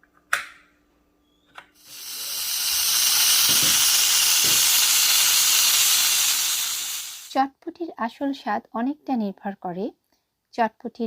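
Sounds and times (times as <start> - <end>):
pressure cooker hissing steam: 1.8 - 7.4.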